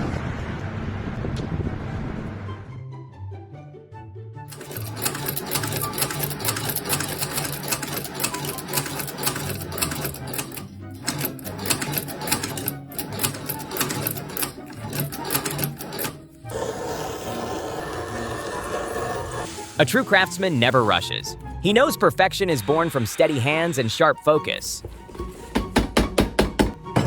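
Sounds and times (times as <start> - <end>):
machine clattering rapidly: 4.5 - 21.1.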